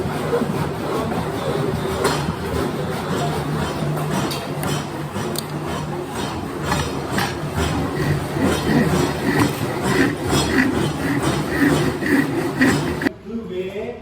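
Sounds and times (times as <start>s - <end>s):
steady low hum: 5.0s - 13.1s.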